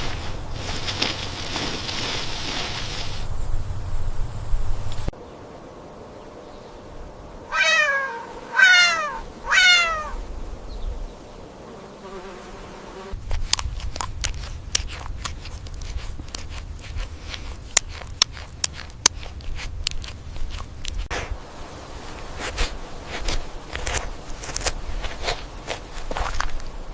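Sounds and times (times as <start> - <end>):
animal crying: 7.5 - 10.2.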